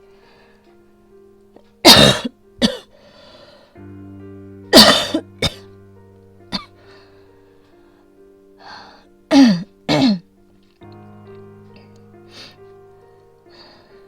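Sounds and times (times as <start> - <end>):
soft background music: 0.0 - 14.0
woman coughing hard: 1.8 - 2.9, 4.8 - 5.6, 9.3 - 10.2.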